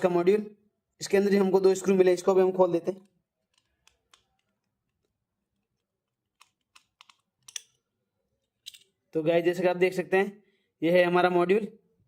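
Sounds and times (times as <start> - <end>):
light clicks and taps of screwdriver: 3.0 - 7.8.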